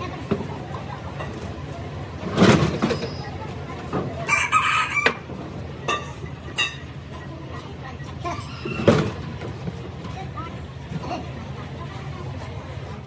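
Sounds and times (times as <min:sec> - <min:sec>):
rooster crowing: 0:04.2 - 0:05.3.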